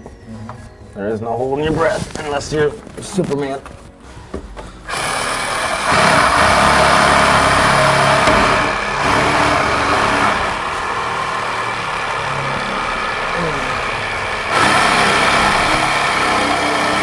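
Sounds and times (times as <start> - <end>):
loud motor running: 4.9 - 17.0.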